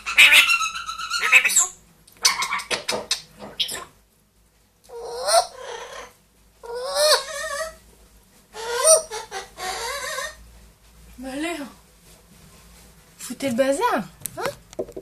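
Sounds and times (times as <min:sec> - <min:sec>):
parrot calling: 0:00.0 - 0:04.0, 0:04.9 - 0:07.8, 0:08.5 - 0:10.4.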